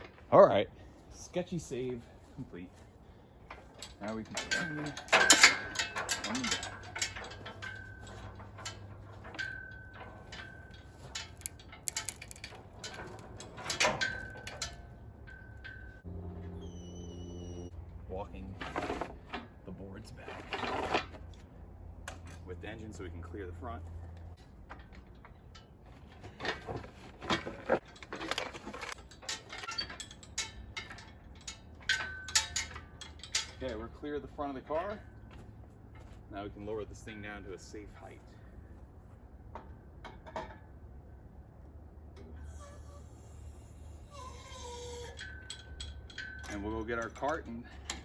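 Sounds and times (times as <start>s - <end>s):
metal clanks and rattles on wood: 3.4s - 16.1s, 18.5s - 19.6s, 20.2s - 21.4s, 24.3s - 33.9s, 39.5s - 40.8s, 45.2s - 48.0s
knocks and clinks: 3.5s - 16.0s, 24.7s - 33.8s, 45.2s - 48.0s
brief squeal: 16.4s - 17.7s
short high squeak: 16.4s - 17.7s, 42.4s - 45.2s
hoist rolling over wooden boards: 20.2s - 21.4s.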